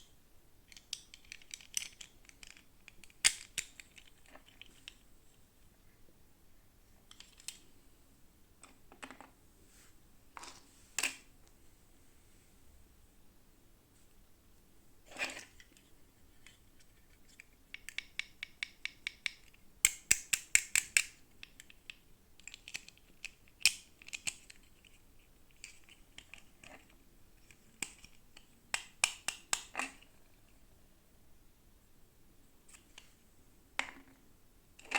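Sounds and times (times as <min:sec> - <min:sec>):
plastic parts clicking and snipping: 0:00.7 - 0:05.0, 0:15.3 - 0:30.1.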